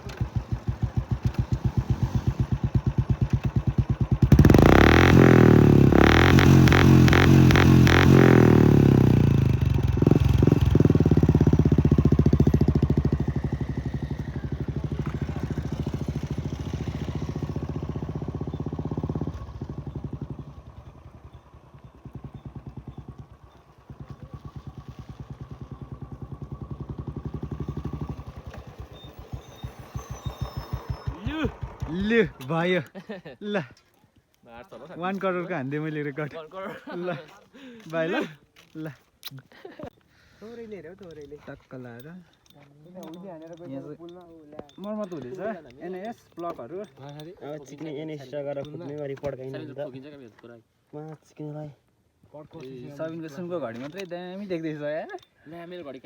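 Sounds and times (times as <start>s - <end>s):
motorcycle engine idling and revving: 0.0s - 32.9s, 39.8s - 50.2s, 52.4s - 56.0s.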